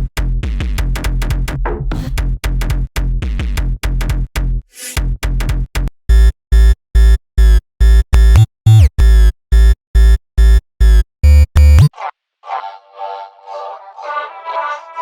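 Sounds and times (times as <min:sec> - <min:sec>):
electronic music with synth stabs: 0:08.2 - 0:09.3, 0:10.8 - 0:12.1.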